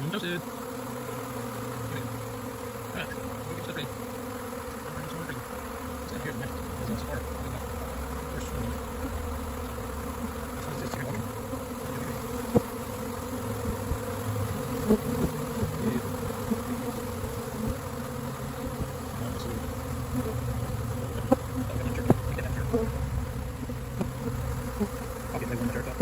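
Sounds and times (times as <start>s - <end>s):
swarm of bees buzzing: 0.0s - 26.0s
sharp knocks: 23.9s - 24.4s.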